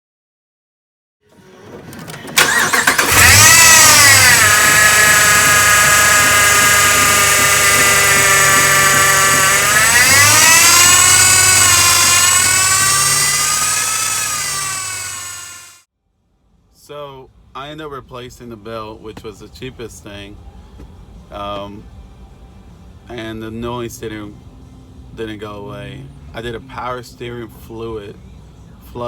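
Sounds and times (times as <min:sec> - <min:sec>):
engine cranking and starting: 0:01.3 - 0:15.8
engine idling: 0:02.0 - 0:15.8
high whine: 0:02.4 - 0:15.8.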